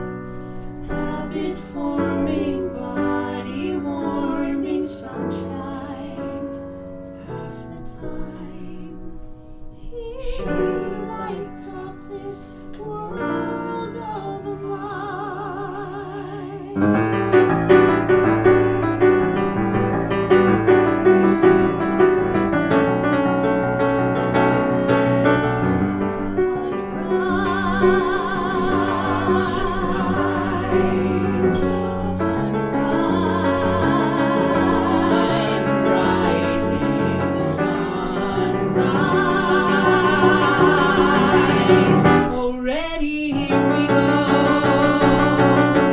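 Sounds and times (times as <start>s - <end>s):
instrumental accompaniment: 16.8s - 42.4s
person singing with vibrato: 24.2s - 45.9s.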